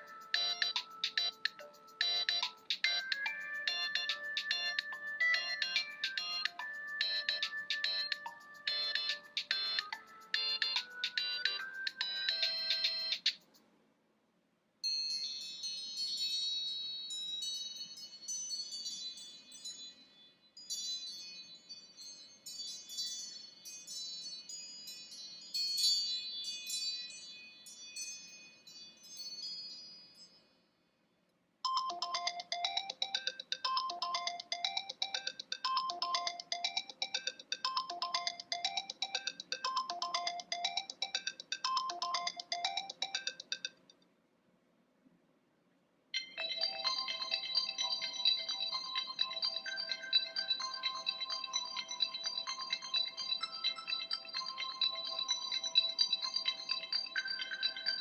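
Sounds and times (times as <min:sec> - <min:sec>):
phone ringtones: 0:00.0 - 0:13.4, 0:31.6 - 0:43.8, 0:46.2 - 0:58.0.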